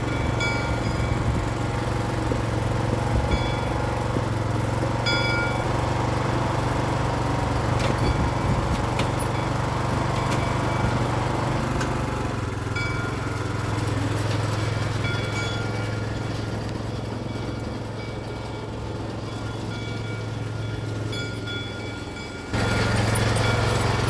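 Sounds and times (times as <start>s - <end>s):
lawn tractor engine running: 0.0s - 24.0s.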